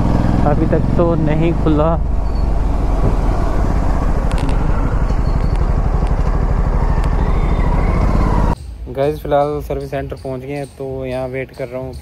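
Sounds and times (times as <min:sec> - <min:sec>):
motorcycle engine running: 0:00.0 - 0:08.6.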